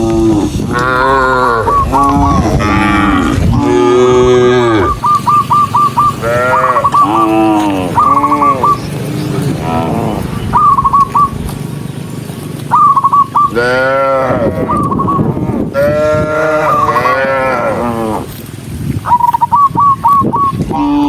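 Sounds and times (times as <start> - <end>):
cattle mooing: 0.0 - 5.2, 5.9 - 10.5, 13.4 - 18.5, 20.7 - 21.0
short high-pitched calls: 4.8 - 8.8.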